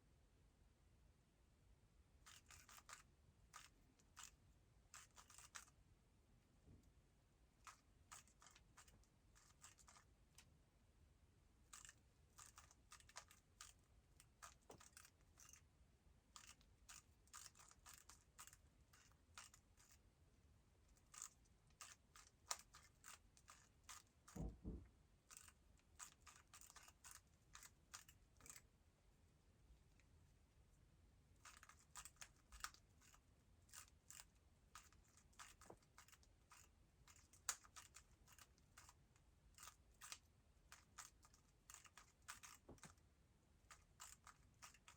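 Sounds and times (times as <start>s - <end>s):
dull knock: 24.4s - 24.9s.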